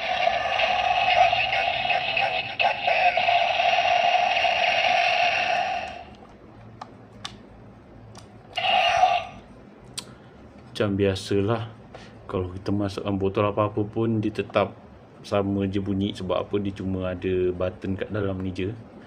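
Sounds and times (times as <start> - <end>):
toy electronic sound effect: 0.0 - 6.1, 8.6 - 9.4.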